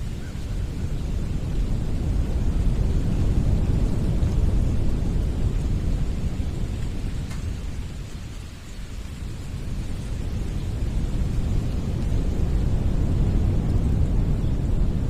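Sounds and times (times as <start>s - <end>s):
wind blowing in gusts: 0.0s - 15.0s.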